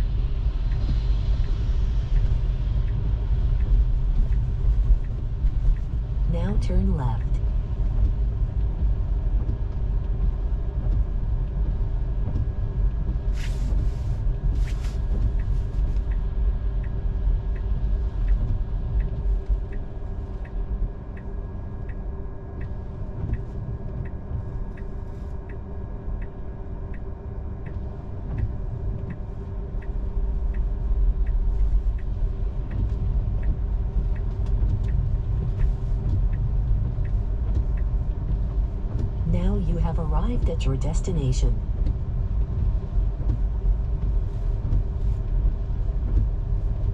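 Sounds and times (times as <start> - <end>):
turn signal ticking: 30.5 - 38.5.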